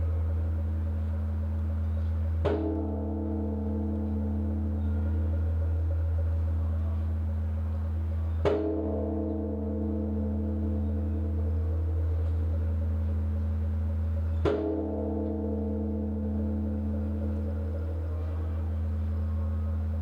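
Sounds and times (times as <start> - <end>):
large temple bell tolling: 0.0 - 20.0.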